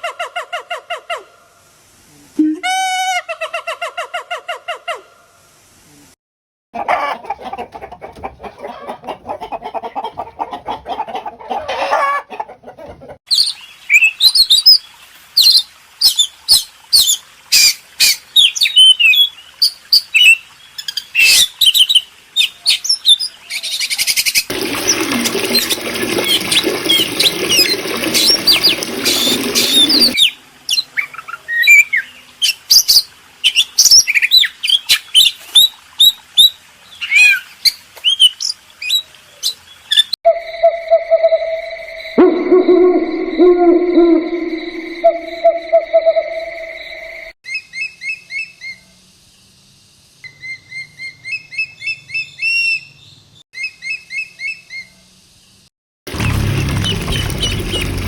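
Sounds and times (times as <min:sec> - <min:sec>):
rapid high chirps: 0:44.1 - 0:47.2.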